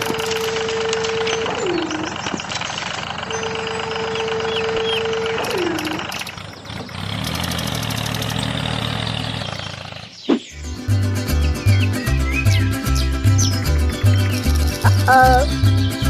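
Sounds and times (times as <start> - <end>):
mini tractor engine running: 0.0 - 10.1.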